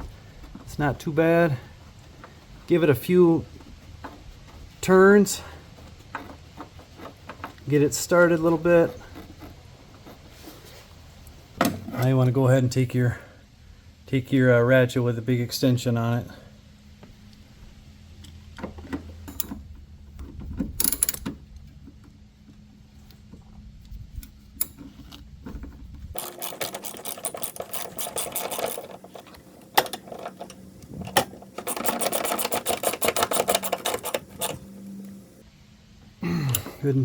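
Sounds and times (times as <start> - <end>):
ratchet wrench clicking rapidly: 26.2 - 29.1, 31.6 - 34.6.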